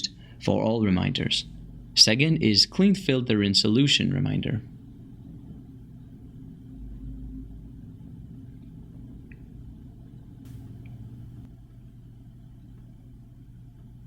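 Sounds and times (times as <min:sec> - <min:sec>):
low steady rumble: 0:00.0 - 0:14.0.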